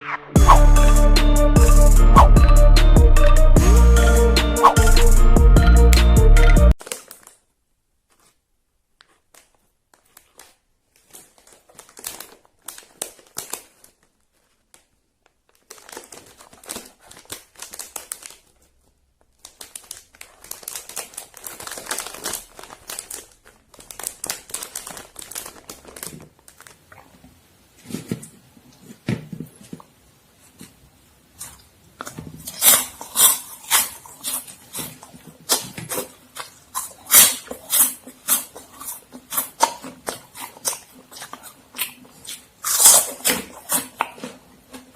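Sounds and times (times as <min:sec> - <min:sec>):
plastic snack wrappers crinkling: 0:06.8 - 0:29.0, 0:31.3 - 0:44.9.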